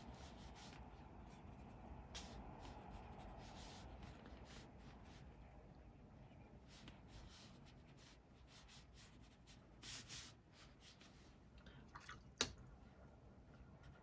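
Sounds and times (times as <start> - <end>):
pencil scratching on paper: 0.0 - 5.2, 6.7 - 11.1.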